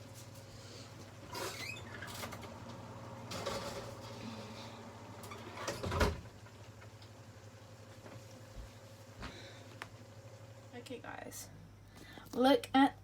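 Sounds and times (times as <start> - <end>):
steady low hum: 7.2 - 13.0.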